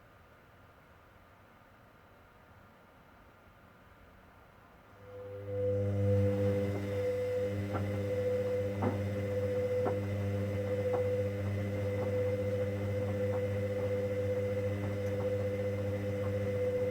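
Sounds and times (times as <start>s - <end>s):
washing machine motor hum: 5.0s - 16.9s.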